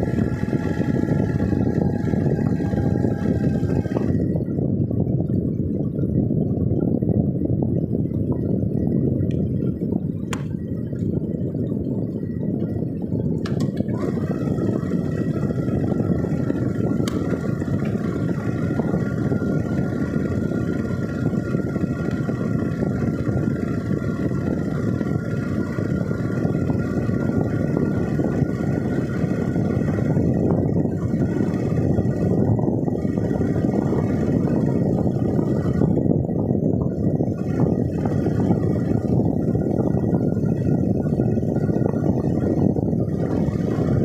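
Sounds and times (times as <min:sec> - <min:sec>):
faint steady whine: 0:00.0 - 0:44.0
wind and road noise: 0:00.0 - 0:44.0.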